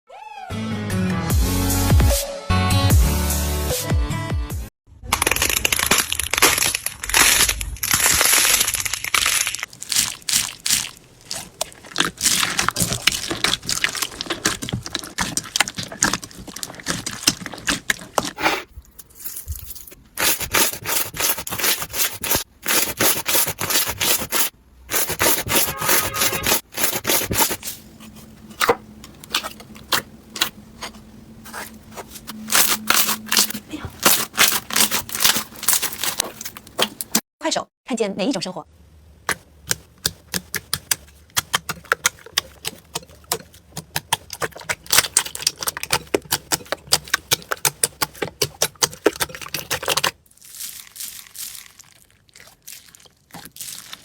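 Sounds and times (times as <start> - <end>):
slime crackling and popping: 5.1 - 18.4, 32.5 - 37.2, 40.1 - 54.0.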